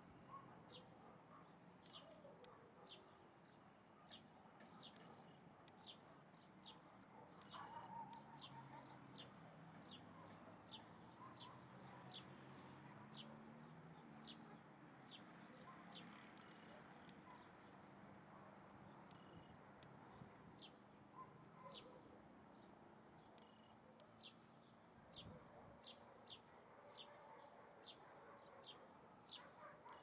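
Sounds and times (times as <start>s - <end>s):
bird chirping: 22.6s - 30.0s.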